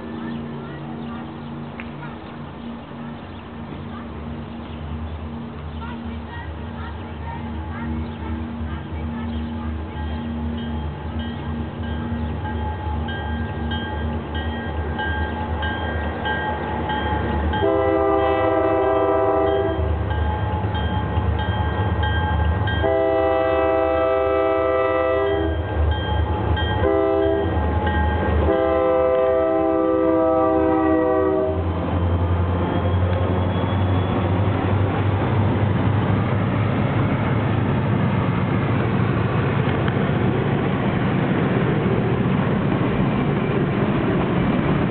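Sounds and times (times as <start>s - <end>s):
diesel engines running: 0.0s - 19.4s
locomotive bell ringing: 0.0s - 34.8s
train rumble and rail noise: 0.0s - 44.9s
train horn blasts: 17.5s - 20.0s, 22.7s - 31.8s.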